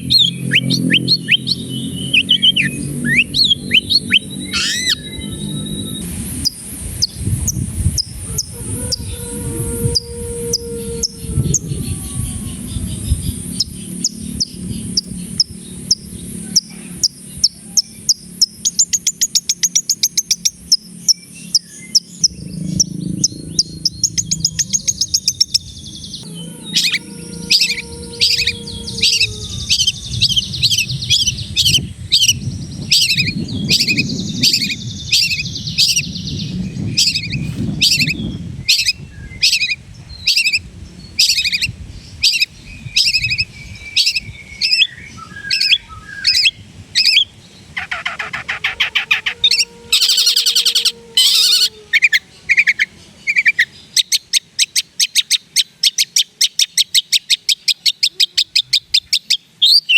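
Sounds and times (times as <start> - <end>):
bird singing sharp high notes: 0.0 - 7.2, 12.6 - 40.5.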